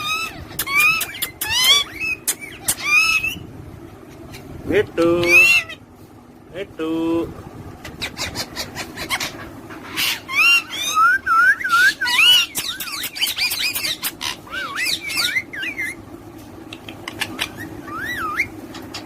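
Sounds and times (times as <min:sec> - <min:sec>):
parrots chirping and whistling: 0:00.0 - 0:03.5, 0:05.2 - 0:05.8, 0:07.8 - 0:16.1, 0:16.7 - 0:19.0.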